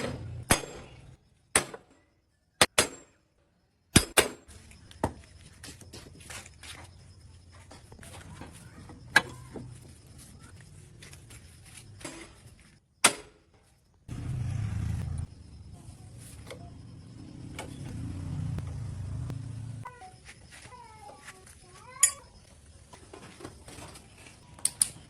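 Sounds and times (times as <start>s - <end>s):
sharp metal knocks: 0.0s - 2.0s, 2.6s - 3.2s, 3.9s - 5.2s.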